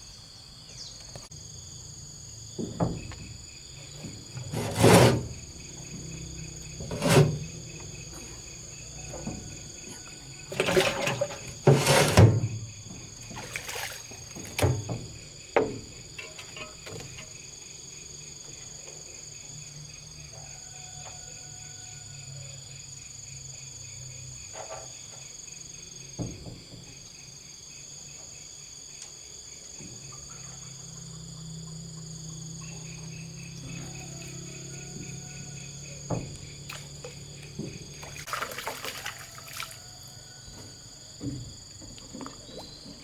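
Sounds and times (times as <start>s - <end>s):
insects chirring: 0.0s - 43.0s
loud knocks or splashes: 37.6s - 39.9s.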